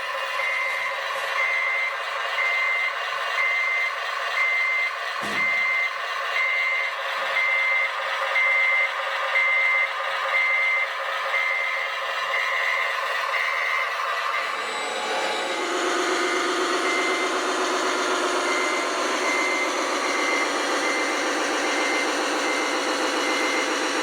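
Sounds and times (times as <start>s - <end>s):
reversing beeper: 0.3s - 24.0s
rc vehicle motor running: 12.9s - 24.0s.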